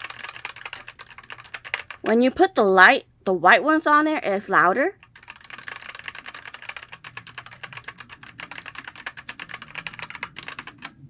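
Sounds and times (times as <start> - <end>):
fast typing on mechanical keyboard: 0.0 - 2.2, 4.9 - 11.0.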